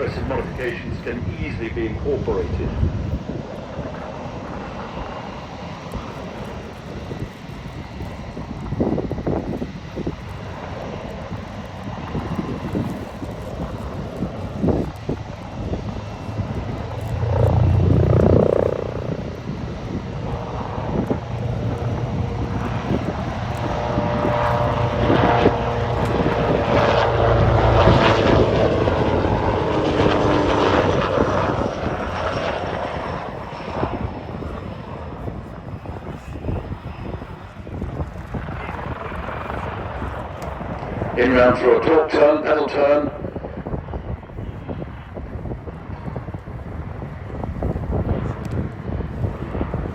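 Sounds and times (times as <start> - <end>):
helicopter flying: 0.0 - 49.9
whining turbine: 0.0 - 49.9.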